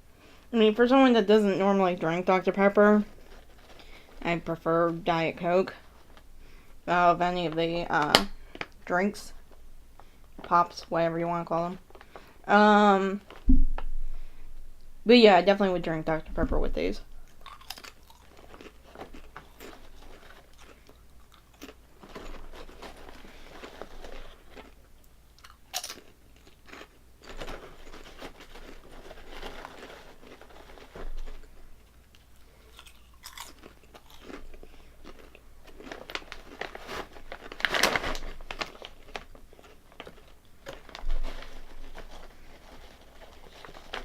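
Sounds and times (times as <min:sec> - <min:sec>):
potato chips being chewed: 0:17.2 - 0:44.0.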